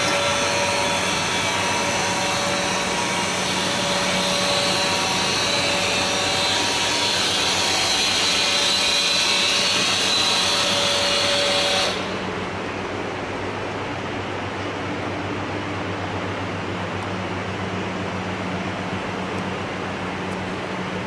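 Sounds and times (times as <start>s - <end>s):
drilling machine motor whirring: 0.0s - 12.3s.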